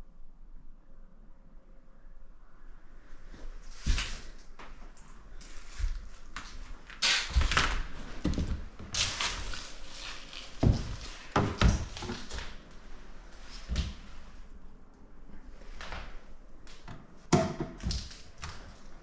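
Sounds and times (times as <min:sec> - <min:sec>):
scuffing noises: 0:05.4 - 0:12.6.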